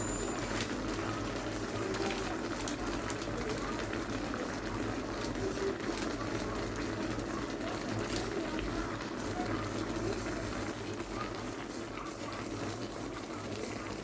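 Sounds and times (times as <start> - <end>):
stir-fry sizzling in a wok: 0.0 - 14.0.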